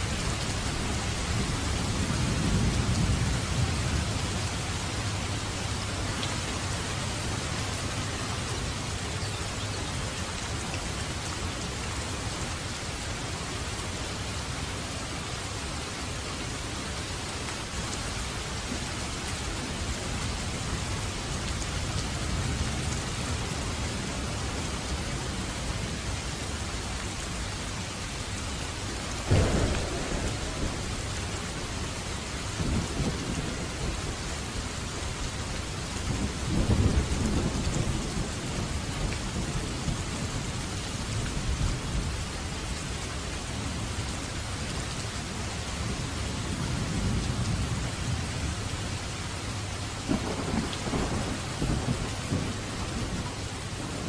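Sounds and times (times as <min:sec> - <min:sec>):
steady rain: 0:00.0 - 0:54.0
thunder rumbling: 0:29.2 - 0:42.1, 0:50.0 - 0:54.0
thunderclap: 0:29.3 - 0:34.2, 0:50.1 - 0:53.2.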